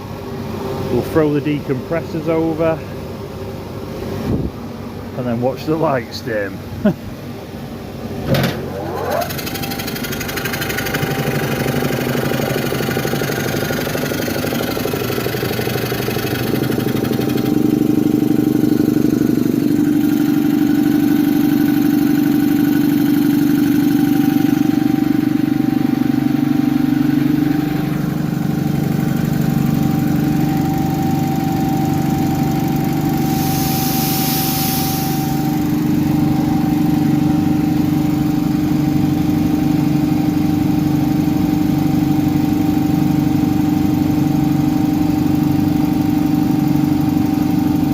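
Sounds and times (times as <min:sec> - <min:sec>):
workshop machinery humming: 0:00.0 - 0:47.9
thin steady whine: 0:17.4 - 0:38.8
air hissing: 0:33.0 - 0:35.8.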